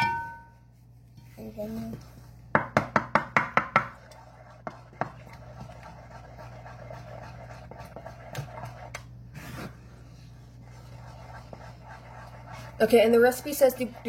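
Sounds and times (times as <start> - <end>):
utensil tapping a mixing bowl: 2.5 - 9.0.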